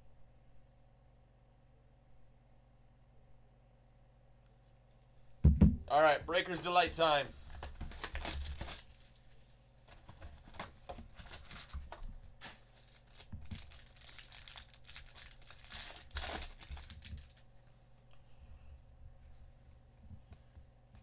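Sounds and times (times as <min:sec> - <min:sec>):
plastic wrapping tearing and crinkling: 0:06.4 - 0:17.4.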